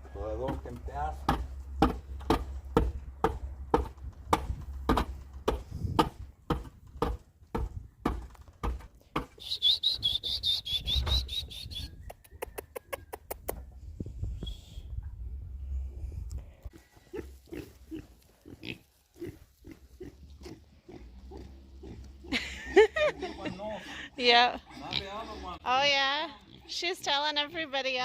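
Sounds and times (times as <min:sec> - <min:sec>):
hammer blows on wood: 0:01.2 - 0:11.4
bird chirping: 0:09.4 - 0:13.2.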